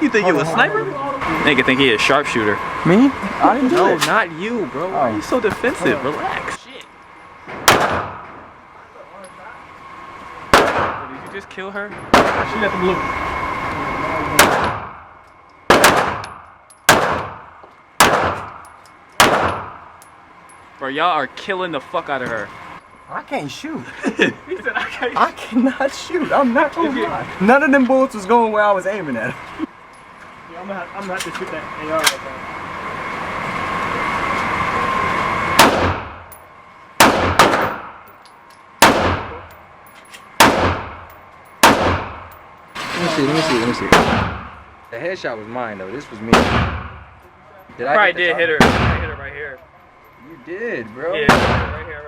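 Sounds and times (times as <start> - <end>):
gunshots with echo: 7.6 - 8.2, 10.5 - 11.1, 12.1 - 12.5, 14.4 - 15.0, 15.7 - 16.2, 16.9 - 18.5, 19.2 - 19.8, 35.6 - 36.1, 37.0 - 38.0, 38.8 - 39.4, 40.4 - 41.0, 41.6 - 42.2, 43.9 - 44.5, 46.3 - 46.9, 48.6 - 49.1, 51.2 - 51.8.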